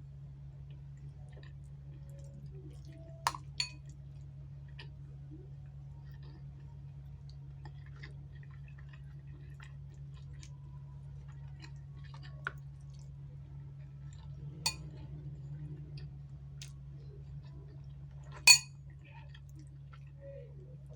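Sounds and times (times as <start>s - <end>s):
steady low hum: 0.0s - 20.9s
chewing and wet mouth sounds: 0.6s - 20.9s
utensil clinks: 18.5s - 18.7s.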